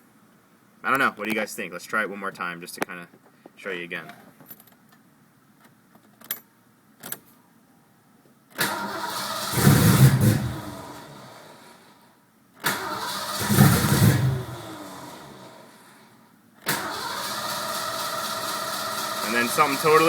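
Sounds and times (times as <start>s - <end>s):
car engine cranking on starter: 8.6s - 11.9s, 12.6s - 20.0s.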